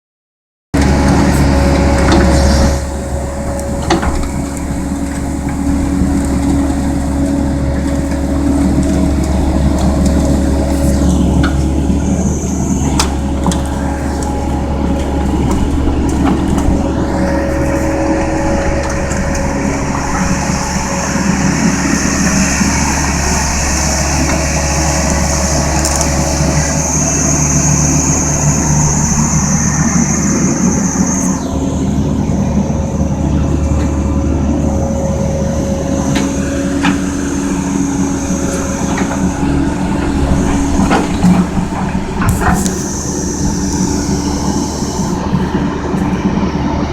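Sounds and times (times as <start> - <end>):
excavator engine drone: 0.8 - 46.9
high whine: 0.8 - 46.9.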